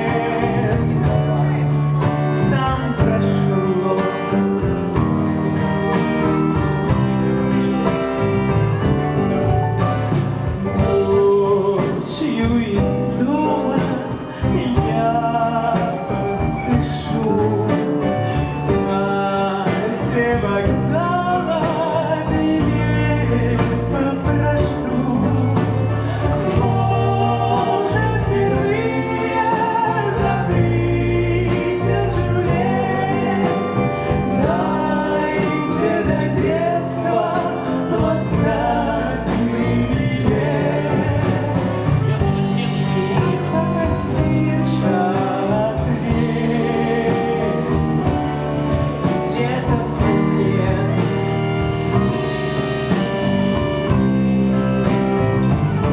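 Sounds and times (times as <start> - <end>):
live band playing: 0.0 - 55.9
woman singing: 10.8 - 51.8.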